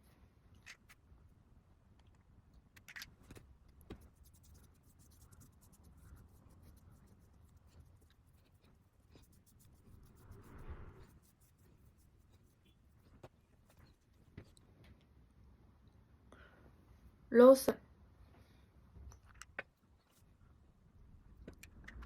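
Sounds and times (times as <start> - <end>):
faint scratching: 2.8 - 14.9.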